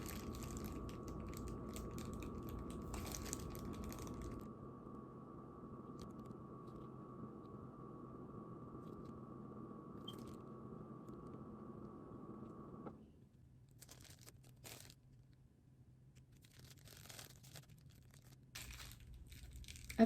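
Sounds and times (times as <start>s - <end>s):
plastic piping bag crinkling: 0.0s - 4.5s, 13.6s - 20.0s
faint hum with high whine: 0.0s - 20.0s.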